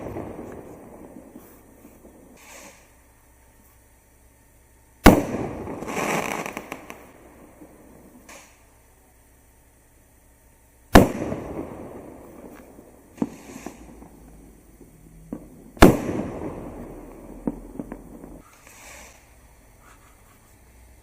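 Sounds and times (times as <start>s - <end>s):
small firework pops: 0.0s - 3.0s, 5.0s - 8.7s, 11.0s - 19.3s
firework shells bursting: 0.0s - 3.6s, 5.0s - 8.8s, 10.9s - 21.0s.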